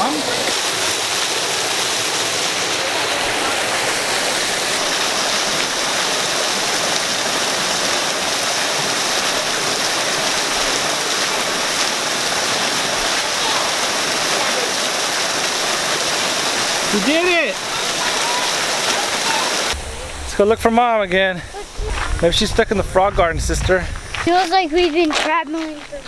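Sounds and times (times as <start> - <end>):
waterfall splashing into pool: 0.0 - 25.9.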